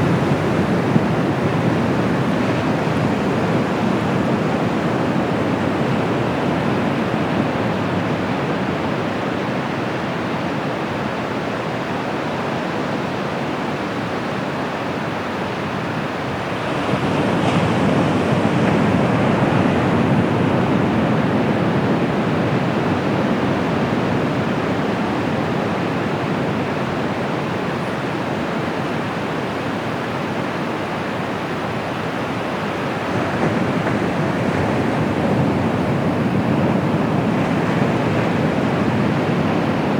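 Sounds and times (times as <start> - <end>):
waves breaking on beach: 15.6 - 39.9.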